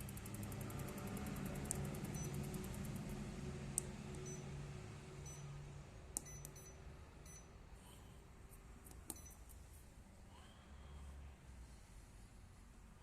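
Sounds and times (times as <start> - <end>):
short high console beeps: 2.1 - 2.4, 6.2 - 7.5, 9.1 - 9.4.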